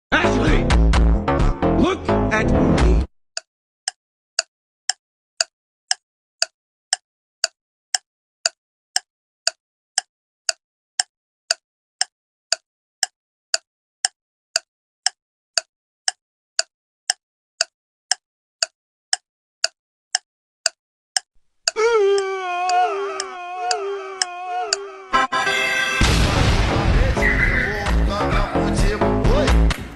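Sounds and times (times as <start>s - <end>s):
clock-like ticking: 3.4s - 25.0s.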